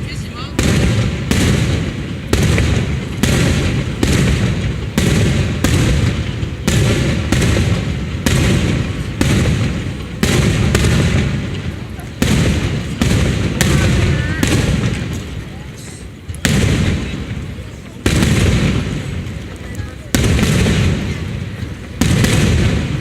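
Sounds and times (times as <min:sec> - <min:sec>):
low rumbling echo: 0:00.0 - 0:23.0
firework shells bursting: 0:00.6 - 0:23.0.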